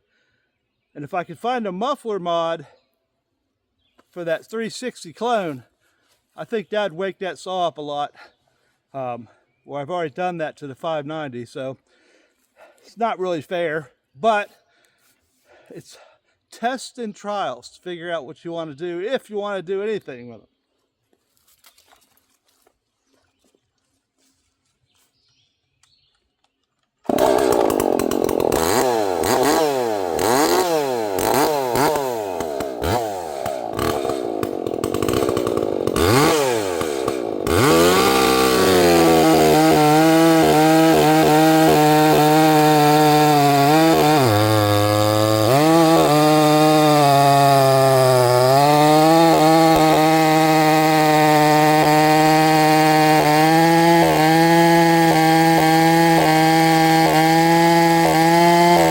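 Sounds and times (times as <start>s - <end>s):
chainsaw cutting wood: 27.0s - 58.9s.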